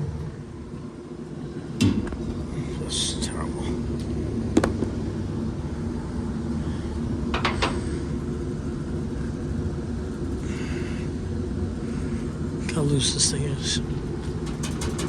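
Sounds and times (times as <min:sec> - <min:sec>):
fan unit humming: 0:00.0 - 0:15.0
sharp knocks: 0:14.4 - 0:15.0.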